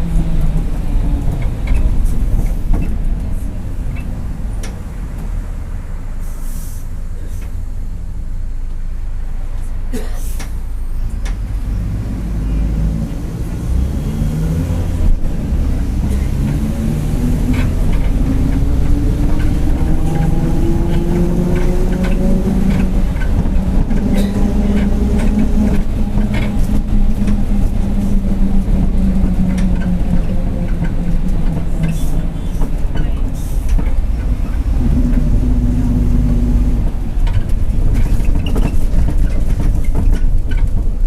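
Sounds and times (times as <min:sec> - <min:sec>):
bus body rattles and knocks: 0:00.0 - 0:05.6, 0:14.4 - 0:41.0
bus diesel engine with whine: 0:00.0 - 0:41.0.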